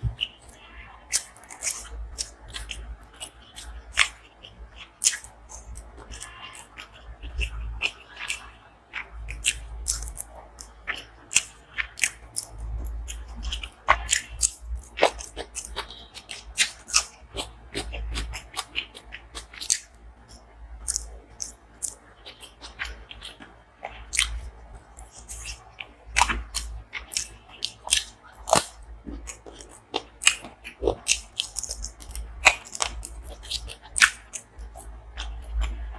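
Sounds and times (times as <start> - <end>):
crunchy chewing: 0.0 - 35.9.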